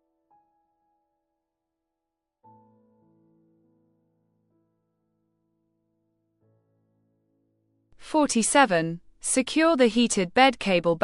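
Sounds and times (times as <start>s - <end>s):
soft piano music: 0.0s - 1.5s, 2.4s - 7.9s.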